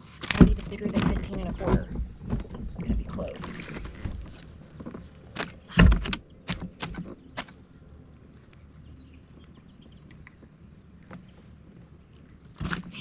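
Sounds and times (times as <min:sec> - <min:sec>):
faint steady background noise: 0:00.0 - 0:13.0
knocks and clatters in kayak: 0:00.1 - 0:07.6, 0:12.6 - 0:13.0.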